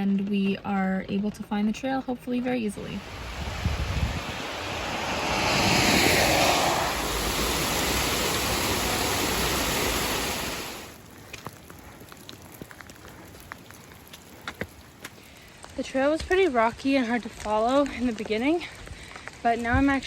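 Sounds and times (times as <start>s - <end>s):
rushing water in pouring rain: 3.0s - 20.0s
patter of water drops: 10.9s - 15.5s.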